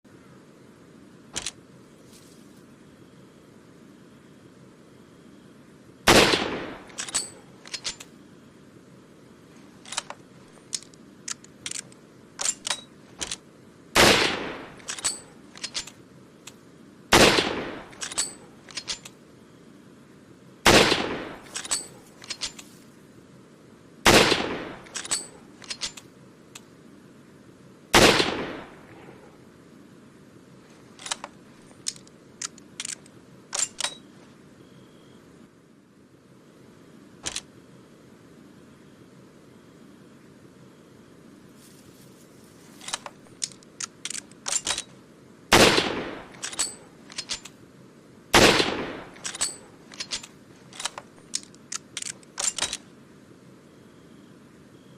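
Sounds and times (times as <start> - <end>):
rifle action clicking: 1.4 - 1.6, 6.1 - 8.1, 9.8 - 13.4, 24.1 - 26.7, 31.0 - 34.1, 42.8 - 45.0, 45.6 - 47.6, 48.4 - 52.9
rifle shots with echo: 6.1 - 7.4, 14.0 - 14.8, 17.1 - 18.1, 20.6 - 21.8, 24.0 - 25.3, 27.9 - 29.3, 45.5 - 46.8, 48.4 - 49.6.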